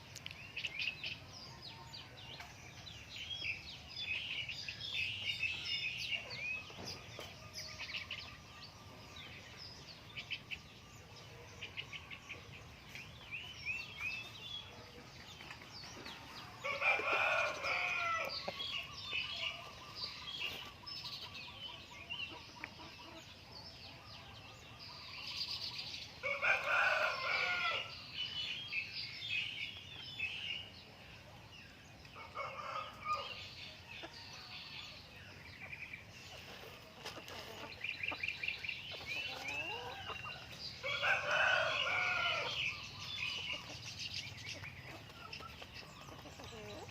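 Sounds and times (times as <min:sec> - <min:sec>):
rooster crowing: 0:16.6 - 0:18.3, 0:26.2 - 0:27.9, 0:40.8 - 0:42.6.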